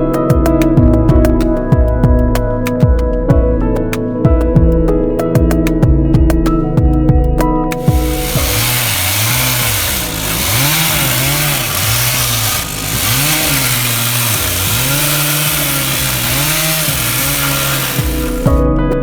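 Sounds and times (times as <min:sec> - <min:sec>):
power saw cutting: 0:07.8 - 0:18.6.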